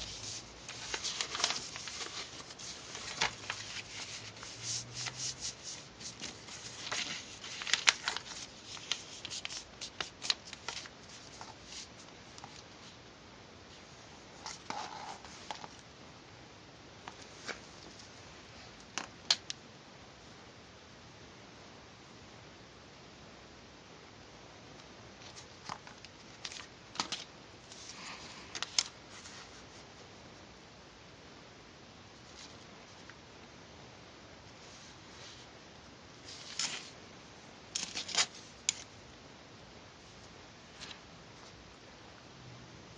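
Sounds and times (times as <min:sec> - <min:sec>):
paper rustling: 0:00.0 - 0:13.0, 0:14.3 - 0:15.8, 0:25.2 - 0:29.9, 0:36.2 - 0:37.0, 0:37.8 - 0:38.9
faint steady hiss: 0:00.0 - 0:42.9.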